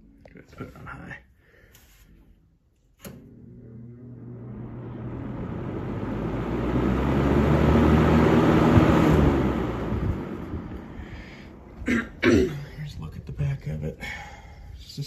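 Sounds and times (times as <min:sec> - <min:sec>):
box fan motor hum and air rush: 0:03.0 - 0:11.8.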